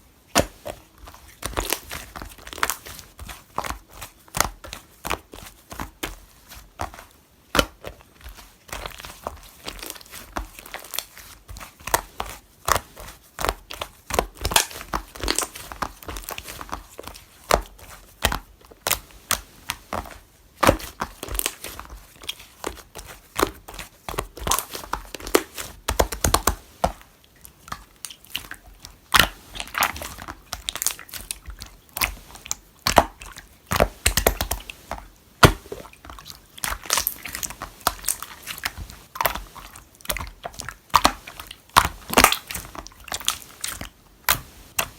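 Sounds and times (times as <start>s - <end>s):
slime squelching: 0.3s - 44.9s
slime crackling and popping: 13.6s - 16.7s, 18.3s - 27.0s, 27.7s - 44.9s.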